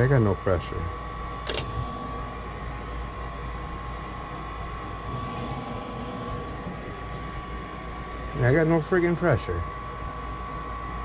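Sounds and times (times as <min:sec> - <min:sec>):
motor whining and humming: 0:01.5 - 0:09.0.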